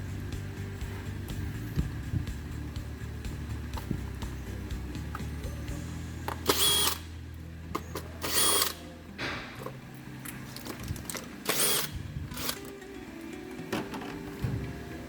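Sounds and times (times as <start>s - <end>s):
power drill whining: 6.4s - 7.1s, 8.2s - 8.8s, 11.5s - 12.7s.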